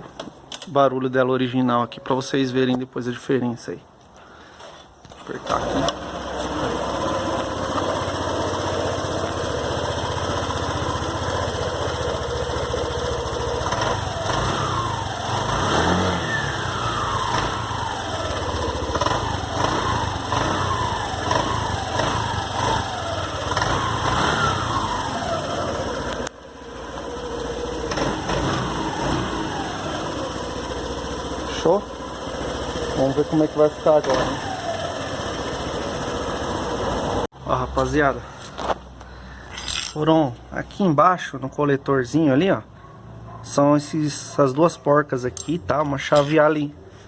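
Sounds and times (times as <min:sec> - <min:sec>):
scooter engine idling and revving: 0:05.3 - 0:39.5.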